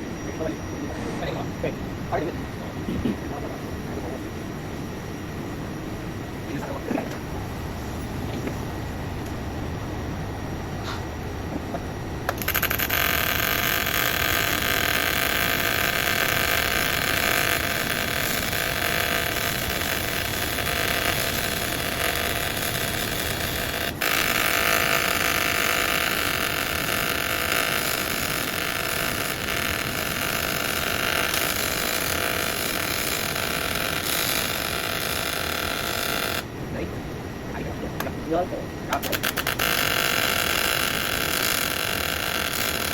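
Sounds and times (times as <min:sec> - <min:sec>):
welding arc hissing: 0:12.3 - 0:36.5, 0:39.0 - 0:42.9.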